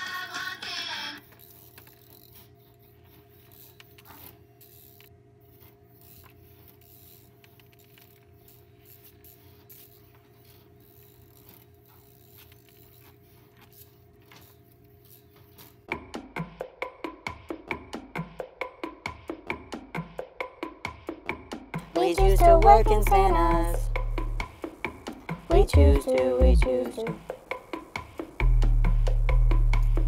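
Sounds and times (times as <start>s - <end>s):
music: 0.0s - 1.3s, 15.9s - 30.0s
small clicks and ticks: 0.4s - 15.9s.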